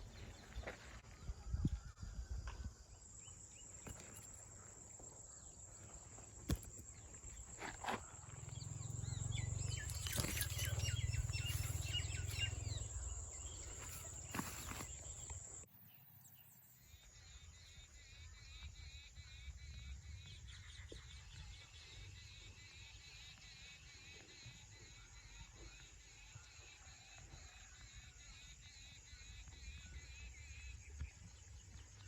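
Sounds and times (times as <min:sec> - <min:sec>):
birds chirping: 0:03.1 - 0:16.6.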